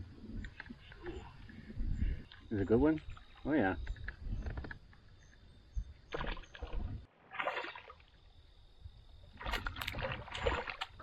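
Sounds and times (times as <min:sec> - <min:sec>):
water splashing around canoe: 0:06.1 - 0:08.3, 0:09.2 - 0:11.0.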